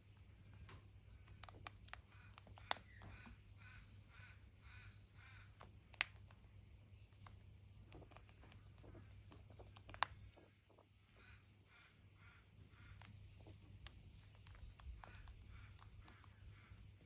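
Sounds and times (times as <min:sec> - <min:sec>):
bird sharp clicks: 0:00.7 - 0:03.8, 0:05.2 - 0:06.4, 0:09.6 - 0:10.4, 0:12.8 - 0:16.7.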